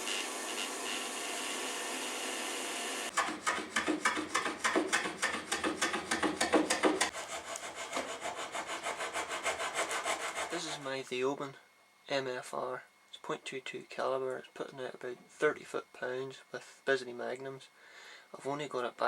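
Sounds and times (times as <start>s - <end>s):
hand tool stroking wood: 3.1s - 11.0s.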